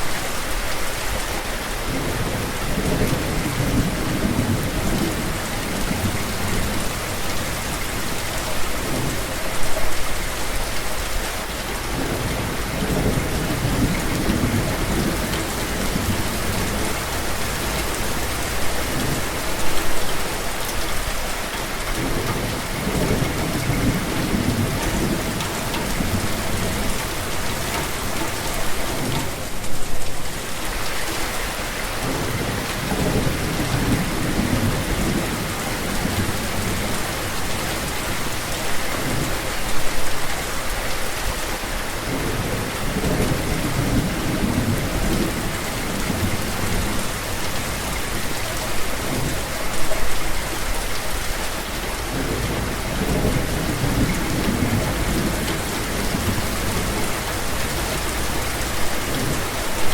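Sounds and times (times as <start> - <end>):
steady rain falling: 0.0 - 59.9
low thunder rumbling: 11.8 - 19.8, 22.0 - 30.2, 32.0 - 38.4, 52.0 - 59.8.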